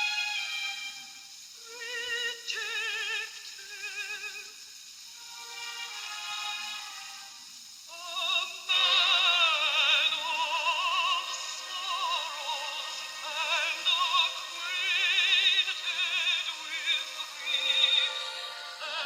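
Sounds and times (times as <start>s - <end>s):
opera-like singing melody: 0.0s - 19.0s.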